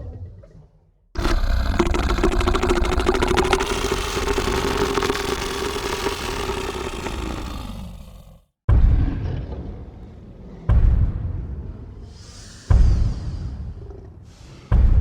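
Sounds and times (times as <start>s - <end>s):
rattling creature breath: 1.2s - 8.4s.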